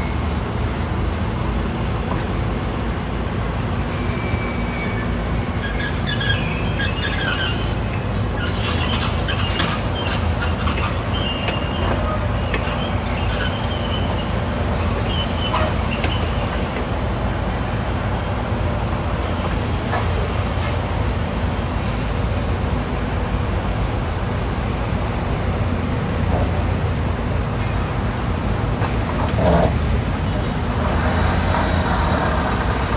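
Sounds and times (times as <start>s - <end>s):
diesel engine rumbling: 0.0s - 17.4s, 18.0s - 32.9s
high metallic squeaks: 29.1s - 32.9s.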